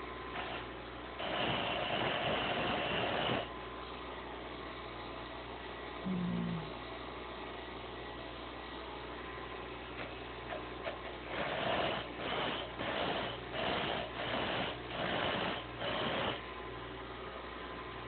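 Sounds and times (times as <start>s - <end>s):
grinder humming: 0.0s - 3.5s, 10.5s - 16.4s.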